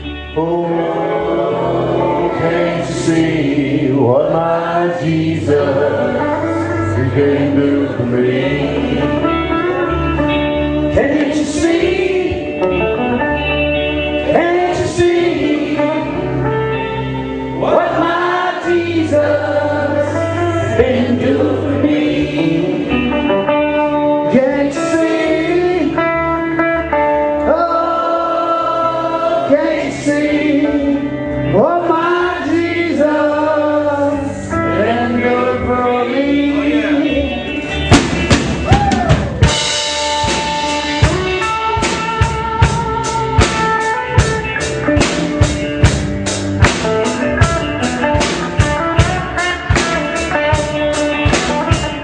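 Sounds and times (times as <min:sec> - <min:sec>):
gospel singing: 0:00.0 - 0:13.2, 0:14.2 - 0:23.2, 0:24.1 - 0:26.5, 0:27.3 - 0:38.0
instrumental backing: 0:00.0 - 0:52.0
steady bass notes: 0:00.0 - 0:52.0.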